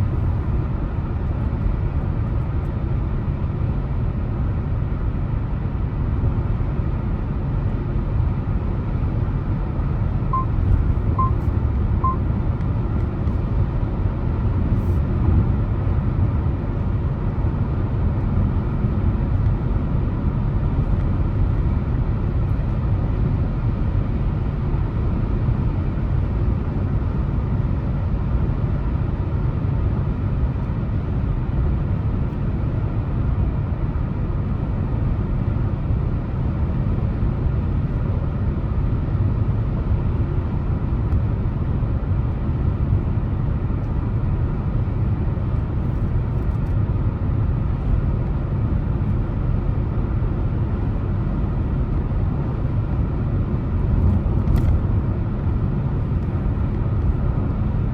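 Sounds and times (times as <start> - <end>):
car road noise: 40.6 - 57.8.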